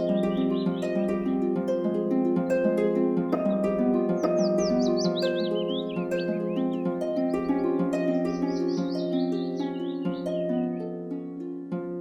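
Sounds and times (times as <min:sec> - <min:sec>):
small bird trilling: 0:00.0 - 0:01.5, 0:03.2 - 0:10.5
plucked-string music: 0:00.0 - 0:12.0.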